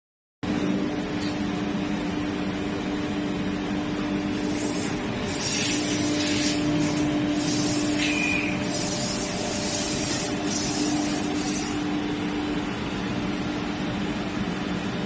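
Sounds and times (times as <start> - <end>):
cnc router mechanical hum: 0.5 - 15.0
high hiss bursts: 4.4 - 11.7.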